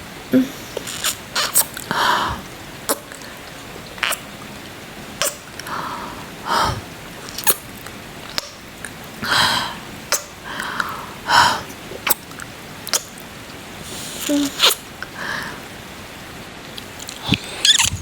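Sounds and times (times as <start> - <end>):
steady rain: 0.0 - 17.0
wet kissing lip smacks: 0.8 - 2.0, 17.0 - 18.0
soft breaths: 1.9 - 2.5, 5.6 - 6.9, 9.2 - 11.8, 13.8 - 15.7.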